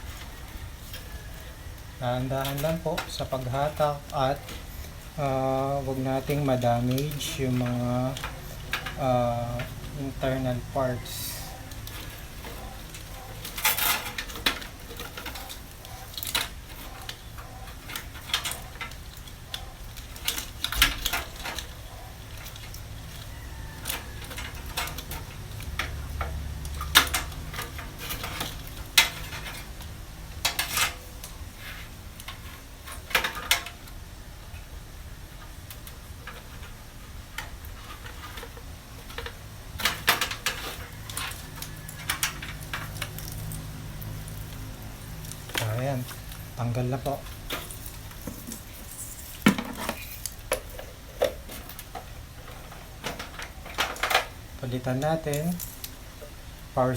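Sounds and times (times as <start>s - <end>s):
metal clanks and scrapes: 0.0s - 33.9s, 35.4s - 56.3s.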